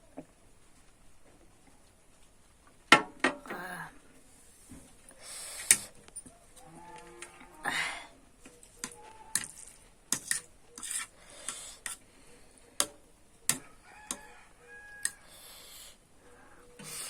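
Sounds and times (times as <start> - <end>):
cutlery clinking against a bowl: 8.8 - 12.0.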